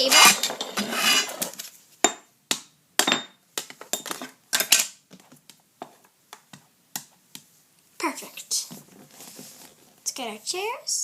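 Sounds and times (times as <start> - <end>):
dishes and cutlery clinking: 3.0 - 5.0.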